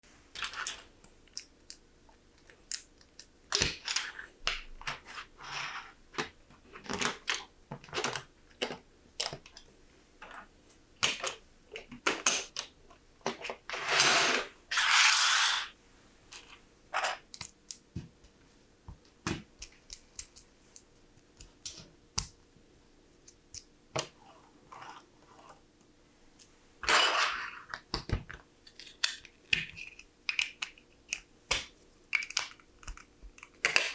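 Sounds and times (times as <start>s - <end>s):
plastic parts scraping and rattling: 3.6s - 17.4s
plastic bricks clicking together: 28.7s - 33.9s.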